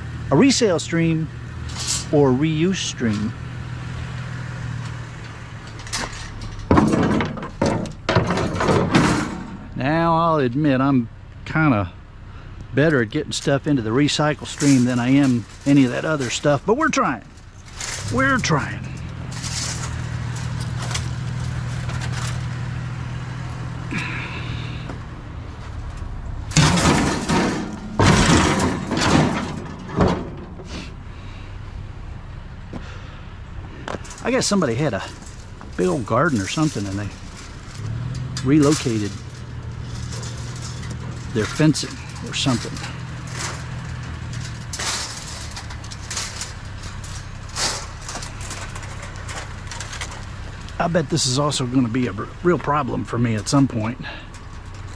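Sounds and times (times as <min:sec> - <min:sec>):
wire fencing rustling and scraping: 0:00.0 - 0:09.8, 0:12.8 - 0:54.9
truck engine humming: 0:00.0 - 0:54.9
truck door clunking and rattling: 0:04.4 - 0:09.8, 0:24.8 - 0:31.1, 0:33.9 - 0:51.9.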